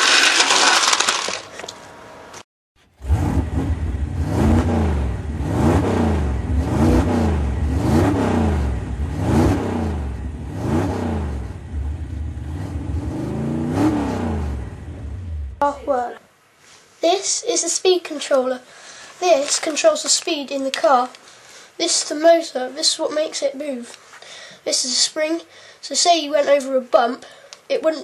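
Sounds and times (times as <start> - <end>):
engine revving: 2.9 - 15.6
steady low drone: 3.1 - 15.6.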